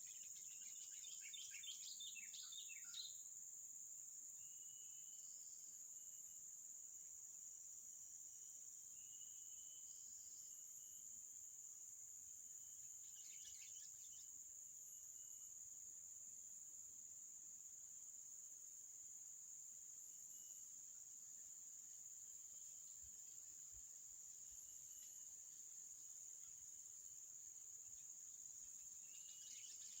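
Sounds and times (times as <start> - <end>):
insects buzzing drone: 8.2 - 30.0.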